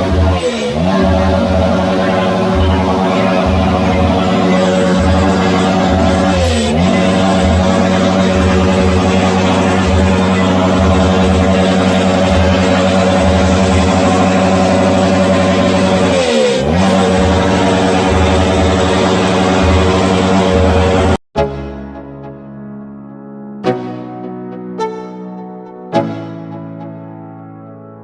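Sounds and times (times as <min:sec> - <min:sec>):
motorcycle engine revving: 0:00.0 - 0:21.2.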